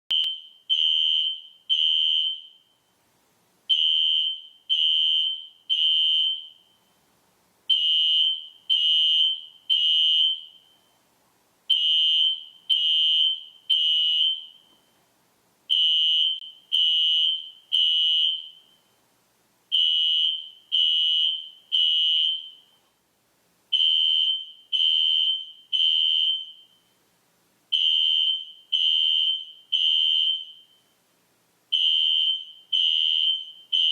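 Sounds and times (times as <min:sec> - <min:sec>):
fire alarm horn blasts: 0:00.1 - 0:02.9, 0:03.7 - 0:06.8, 0:07.7 - 0:10.9, 0:11.7 - 0:14.9, 0:15.7 - 0:18.9, 0:19.7 - 0:22.8, 0:23.7 - 0:26.9, 0:27.7 - 0:30.9, 0:31.8 - 0:33.9.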